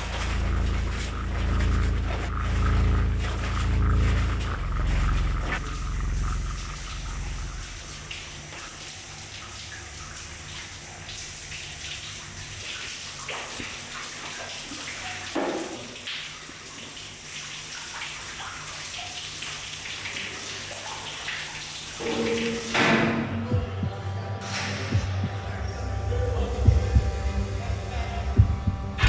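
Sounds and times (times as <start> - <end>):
faint low hum: 0.0 - 11.0
running water hissing: 0.0 - 23.0.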